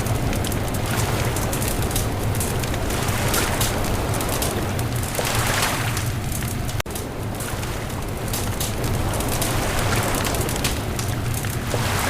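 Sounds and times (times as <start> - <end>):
bonfire crackling and popping: 0.0 - 12.0
low rumble: 0.0 - 12.0.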